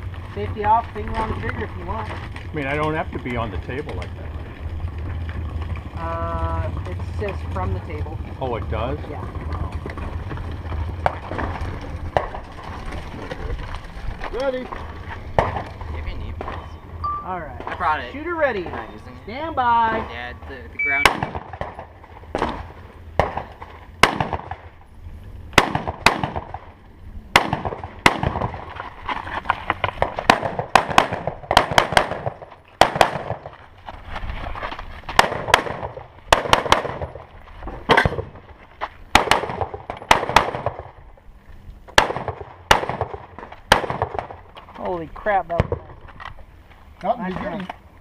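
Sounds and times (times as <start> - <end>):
rifle shots with echo: 20.9 - 24.7, 25.5 - 28.6, 30.0 - 33.6, 35.2 - 37.2, 39.1 - 41.0, 42.0 - 44.4.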